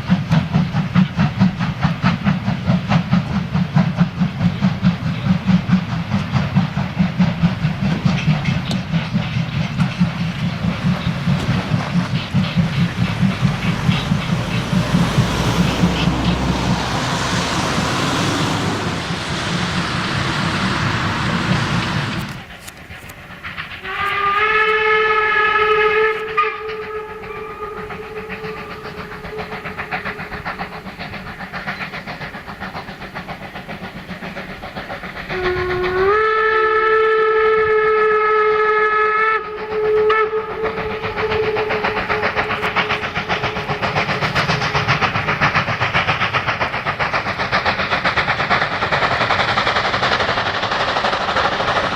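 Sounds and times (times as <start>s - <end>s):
train clatter: 0.0s - 51.9s
loud rushing noise: 12.9s - 22.4s
steam whistle blasts: 23.8s - 29.6s, 35.3s - 42.7s.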